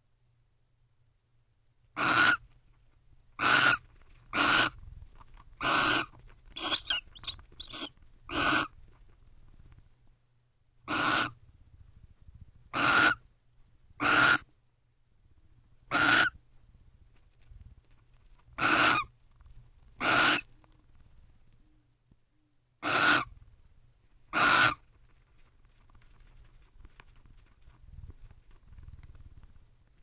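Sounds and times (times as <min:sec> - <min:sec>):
barn owl calling: 0:02.0 - 0:02.4, 0:03.4 - 0:04.8, 0:05.6 - 0:08.8, 0:10.8 - 0:11.4, 0:12.7 - 0:13.2, 0:14.0 - 0:14.4, 0:15.9 - 0:16.4, 0:18.6 - 0:19.2, 0:20.0 - 0:20.7, 0:22.8 - 0:23.4, 0:24.3 - 0:24.9.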